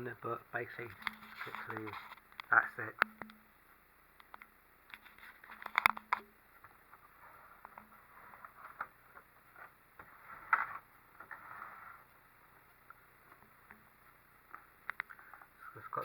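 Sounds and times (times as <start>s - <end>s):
plastic parts clicking and scraping: 0.9s - 3.3s, 4.3s - 6.3s.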